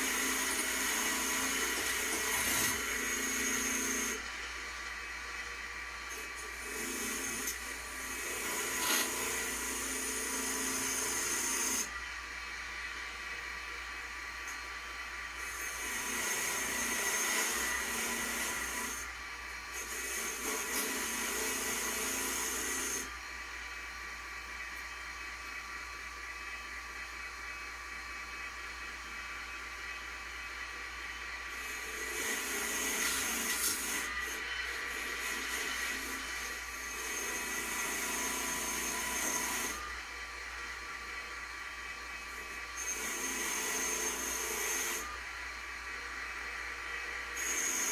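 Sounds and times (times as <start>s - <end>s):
power tool scouring metal: 6.6s - 11.9s, 31.6s - 39.9s.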